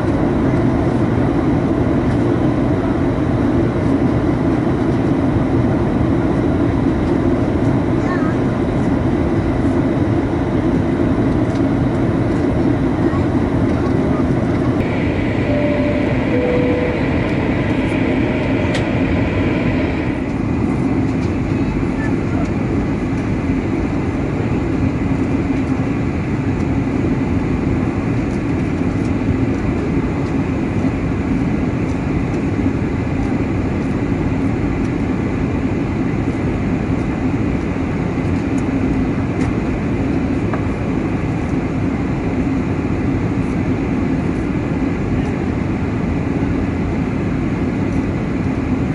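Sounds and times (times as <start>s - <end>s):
airflow and engine noise in cabin: 0.0s - 48.9s
two-note high-low chime: 14.8s - 20.2s.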